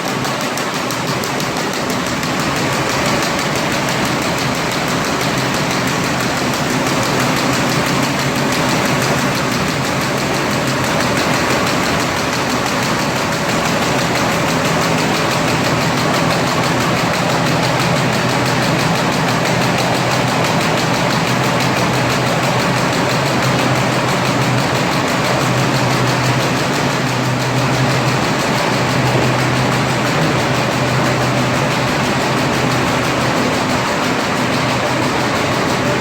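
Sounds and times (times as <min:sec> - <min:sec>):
constant machine hum: 0:00.0 - 0:36.0
machine mechanical clatter: 0:00.0 - 0:36.0.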